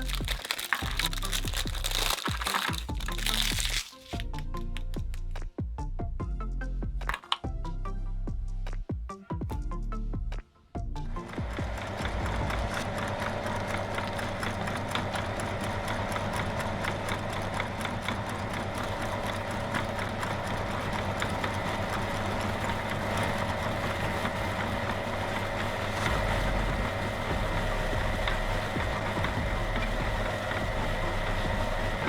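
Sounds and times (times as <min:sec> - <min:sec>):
cookies crunching and cracking: 0:00.0 - 0:05.4
meat grinder motor humming: 0:00.0 - 0:05.4, 0:11.0 - 0:32.0.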